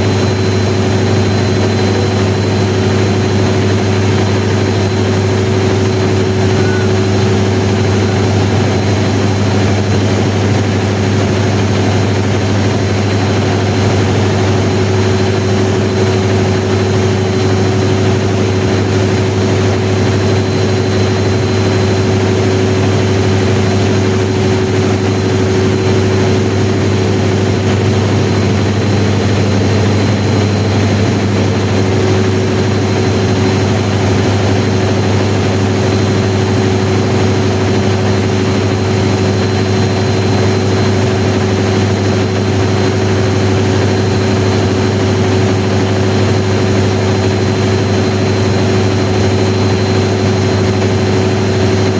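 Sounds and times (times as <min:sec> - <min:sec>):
faint high whine: 0:00.0 - 0:37.4
diesel generator droning: 0:00.0 - 0:51.9.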